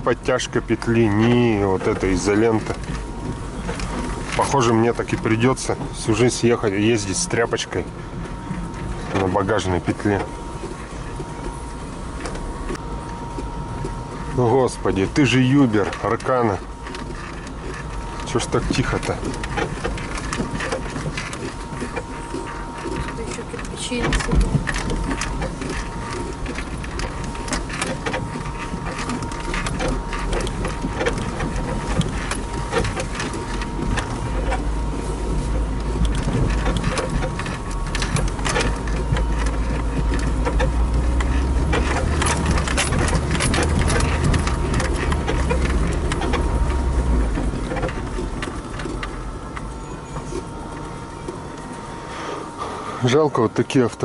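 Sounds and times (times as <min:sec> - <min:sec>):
car body rattling and knocking: 0:00.0 - 0:51.8
car engine and road drone: 0:00.0 - 0:54.0.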